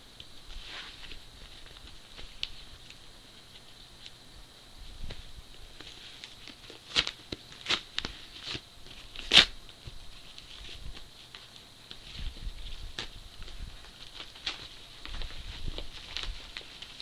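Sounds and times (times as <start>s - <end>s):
packaging crackling and ripping: 5.8s - 9.6s, 10.3s - 17.0s.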